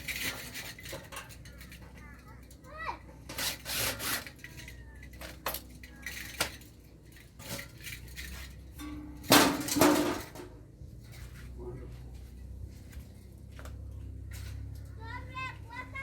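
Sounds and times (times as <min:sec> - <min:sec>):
metal parts clanking: 0:00.0 - 0:11.4.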